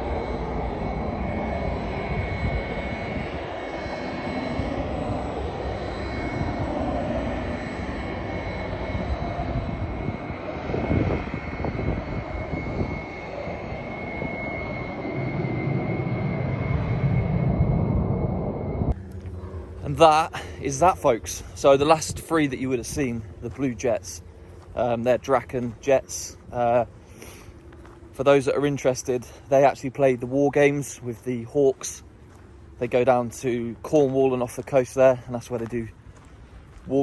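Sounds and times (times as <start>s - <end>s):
jet aircraft flying by: 0.0s - 37.0s.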